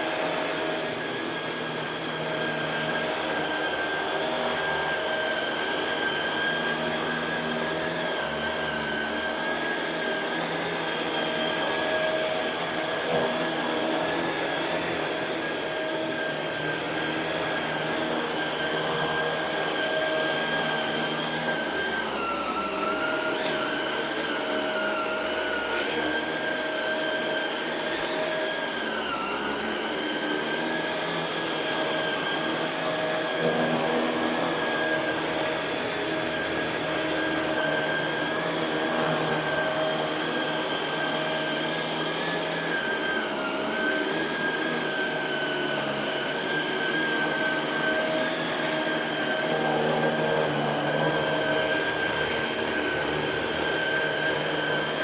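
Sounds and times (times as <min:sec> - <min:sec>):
vacuum cleaner motor whine: 0:00.0 - 0:55.0.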